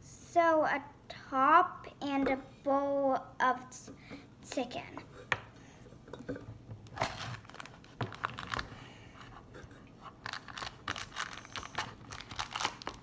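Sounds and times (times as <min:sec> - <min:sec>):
plastic packaging crinkling: 0:06.9 - 0:08.8, 0:10.2 - 0:13.0.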